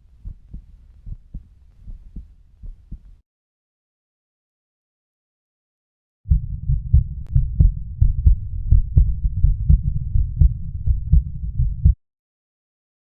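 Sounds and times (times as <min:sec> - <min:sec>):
heartbeat thumps: 0:00.0 - 0:03.2, 0:06.3 - 0:12.0
low rumble: 0:06.3 - 0:12.0.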